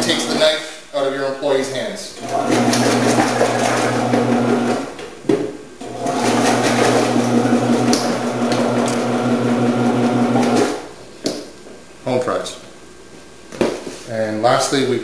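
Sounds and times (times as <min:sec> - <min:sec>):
vegetable processor motor running: 0:02.2 - 0:04.9, 0:05.8 - 0:10.8.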